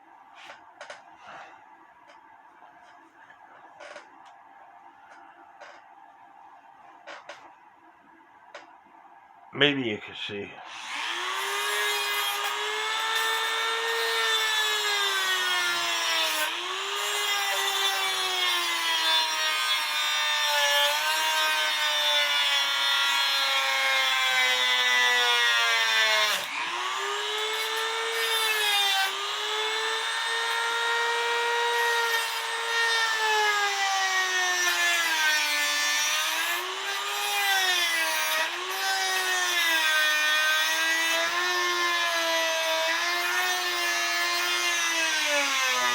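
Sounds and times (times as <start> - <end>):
grinding tool motor whine: 10.7 - 18.9, 24.8 - 34.3.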